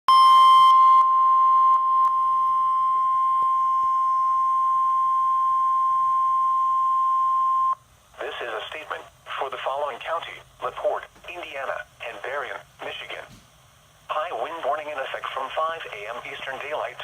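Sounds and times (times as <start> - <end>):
high-pitched alarm tone: 0.1 - 7.8.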